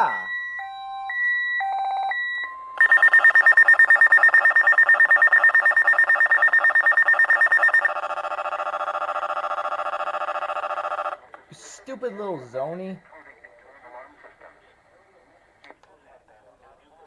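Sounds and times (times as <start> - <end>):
short overlapping beeps: 0.0 - 11.0
rapidly pulsing alert alarm: 0.0 - 11.2.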